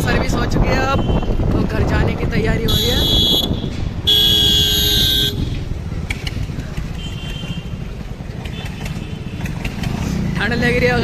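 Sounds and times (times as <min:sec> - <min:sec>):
road and engine noise: 0:00.0 - 0:11.0
vehicle horn honking: 0:02.7 - 0:05.6, 0:07.0 - 0:07.8.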